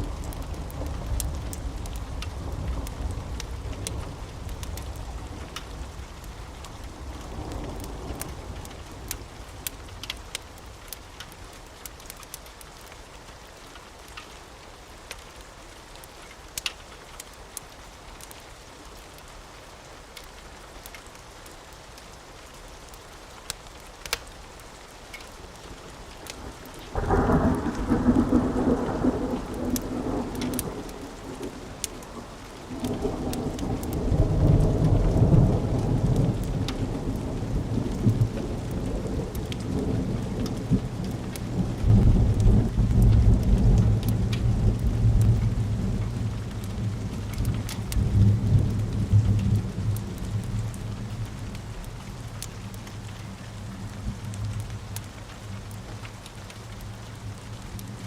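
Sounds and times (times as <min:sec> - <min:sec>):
sharp crackles: 0:00.0 - 0:14.4, 0:15.0 - 0:19.3, 0:20.1 - 0:58.0
steady rain: 0:00.0 - 0:58.0
thunder rumbling: 0:26.3 - 0:52.4.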